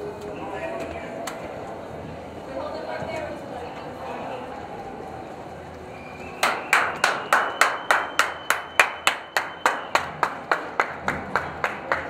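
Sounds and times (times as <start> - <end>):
rhythmic clapping: 6.4 - 12.0.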